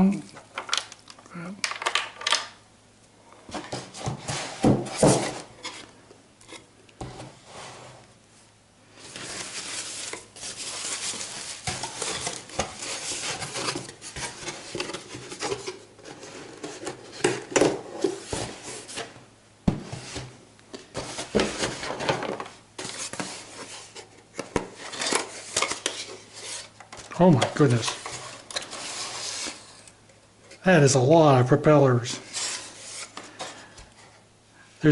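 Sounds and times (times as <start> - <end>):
small hard parts clattering: 0.5 - 2.5
plastic packaging rustling: 8.9 - 19.2, 20.0 - 30.6.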